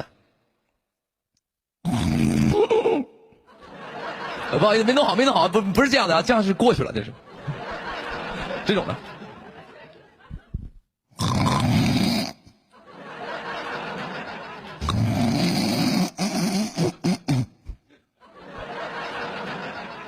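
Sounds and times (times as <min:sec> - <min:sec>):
man imitating snoring: 0:01.8 - 0:02.7, 0:11.2 - 0:12.6, 0:14.8 - 0:17.6
sputtering snorts: 0:01.9 - 0:02.6, 0:11.2 - 0:12.5, 0:14.8 - 0:17.8.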